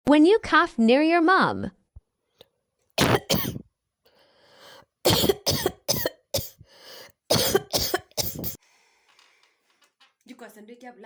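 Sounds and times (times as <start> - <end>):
person coughing: 3.0 - 3.6, 5.1 - 6.6, 7.3 - 8.6
short breath: 4.0 - 4.9, 6.6 - 7.2, 8.4 - 9.8.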